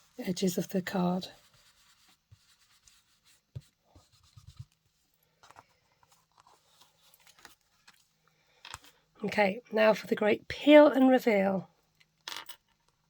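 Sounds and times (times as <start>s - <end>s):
brush rubbing on cardstock: 1.2s - 4.7s.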